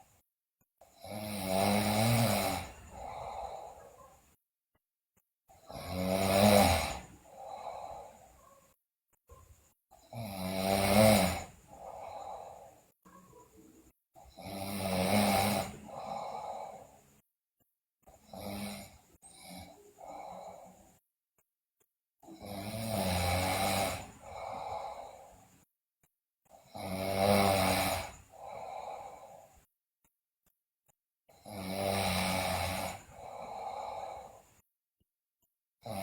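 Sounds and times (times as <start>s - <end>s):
girl snoring loudly: 0.9s - 4.1s, 5.6s - 8.5s, 10.0s - 12.8s, 14.2s - 17.1s, 18.2s - 20.8s, 22.2s - 25.5s, 26.6s - 29.6s, 31.3s - 34.5s.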